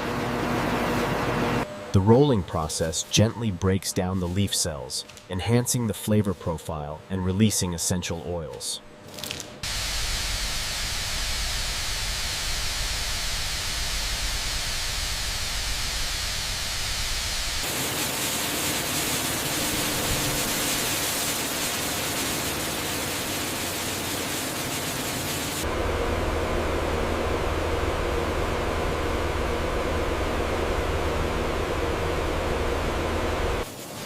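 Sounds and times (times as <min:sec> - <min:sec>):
machinery hiss: 0:09.6 - 0:34.0
rough machinery noise: 0:17.2 - 0:33.7.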